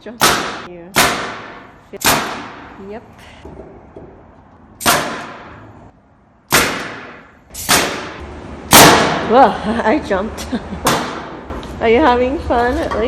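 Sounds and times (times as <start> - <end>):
nails hammered into wood: 0.2 - 2.6, 4.8 - 5.5, 6.5 - 9.2.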